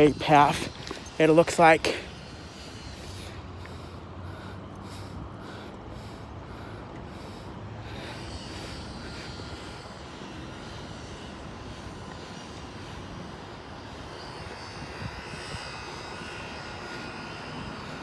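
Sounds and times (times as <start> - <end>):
footsteps on pavement: 0.0 - 11.2, 11.9 - 13.0
distant engine drone: 0.0 - 18.0.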